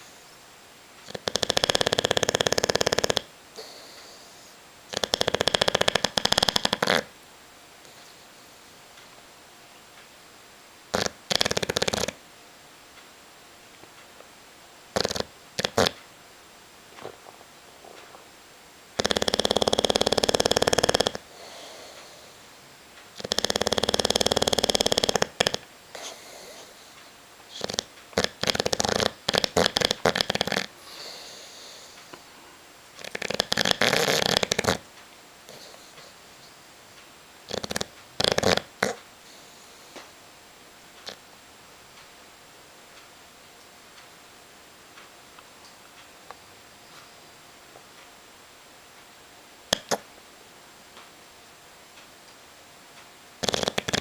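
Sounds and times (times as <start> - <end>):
dog snorting: 1.0 - 7.1, 10.9 - 12.2, 14.9 - 16.0, 19.0 - 22.4, 23.2 - 31.9, 33.0 - 34.9, 35.5 - 36.5, 37.4 - 40.1, 49.7 - 50.1, 53.4 - 54.0
dog snoring: 1.0 - 7.2, 10.9 - 12.2, 14.9 - 16.0, 19.0 - 22.4, 23.2 - 32.0, 33.0 - 34.9, 35.5 - 36.2, 37.4 - 40.0, 41.0 - 41.2, 53.4 - 54.0
dog breathing: 23.2 - 32.3.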